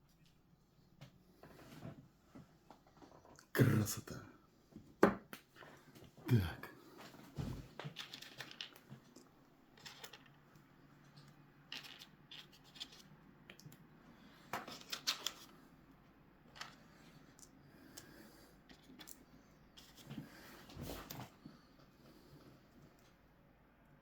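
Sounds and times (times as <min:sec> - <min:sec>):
plastic parts clicking and scraping: 0:07.8 - 0:13.8, 0:14.4 - 0:15.6, 0:16.5 - 0:19.2.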